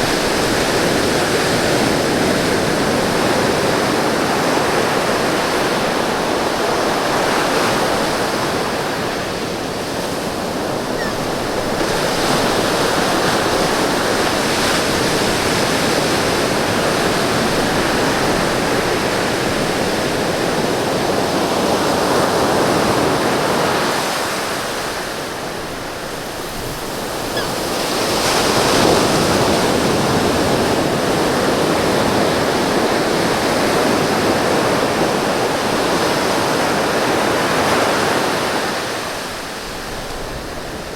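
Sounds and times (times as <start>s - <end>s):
ocean surf washing onto beach: 0.0s - 40.9s.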